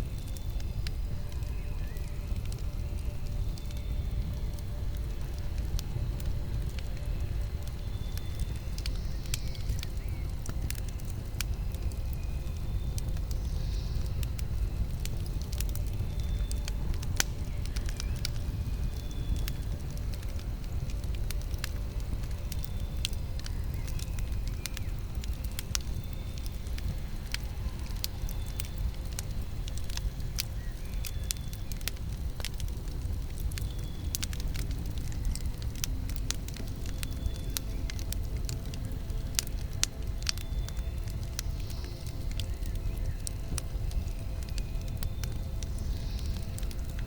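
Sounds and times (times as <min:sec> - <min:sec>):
low rumble of flames: 0:00.0 - 0:47.0
wood crackling and popping: 0:00.0 - 0:47.0.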